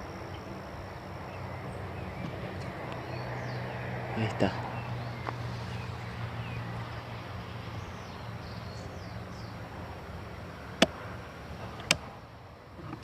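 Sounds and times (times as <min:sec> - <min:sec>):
faint birdsong: 0:00.0 - 0:13.0
steady low hum: 0:00.0 - 0:13.0.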